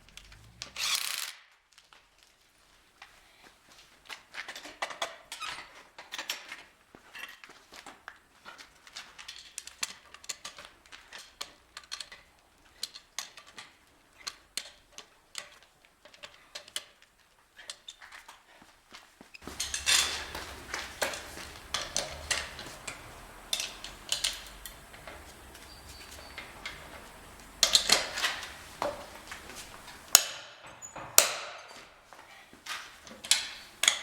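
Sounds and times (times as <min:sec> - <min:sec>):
hand tools clinking: 0:19.4 - 0:34.0.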